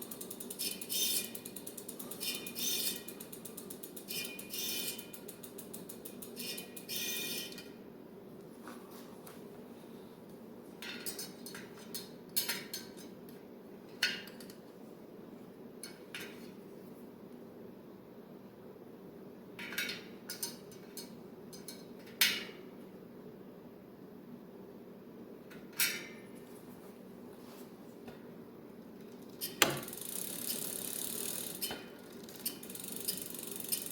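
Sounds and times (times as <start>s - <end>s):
bicycle hub ratchet ticking: 0.0s - 7.7s, 29.1s - 33.9s.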